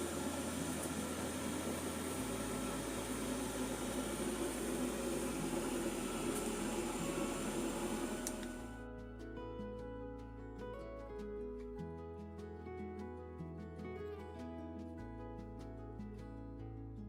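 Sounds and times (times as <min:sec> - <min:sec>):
appliance humming and whirring: 0:00.0 - 0:08.9.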